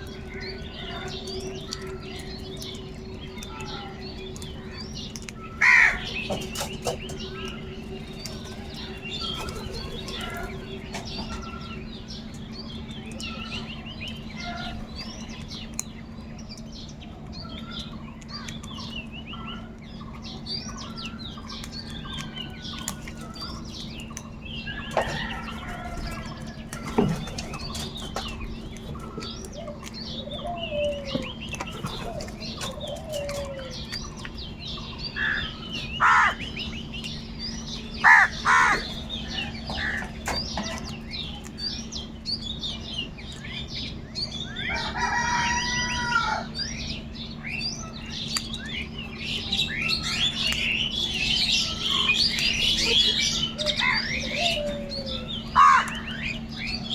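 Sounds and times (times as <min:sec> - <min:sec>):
small birds chirping: 0:00.0 - 0:56.9
crows cawing: 0:05.5 - 0:06.3, 0:35.1 - 0:36.8, 0:37.9 - 0:40.2, 0:55.4 - 0:56.4.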